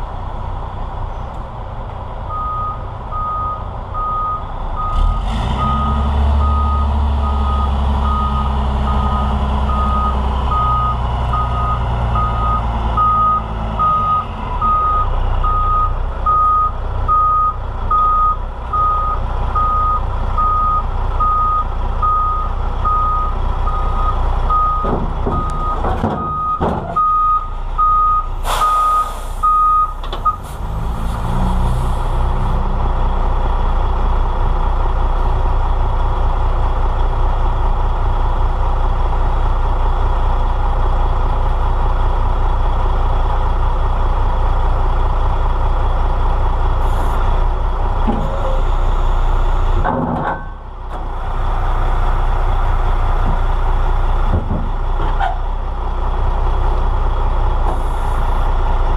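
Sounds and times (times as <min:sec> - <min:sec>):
diesel engine running: 0:00.0 - 0:58.9
knocks: 0:24.8 - 0:27.0
air hiss: 0:28.4 - 0:29.5.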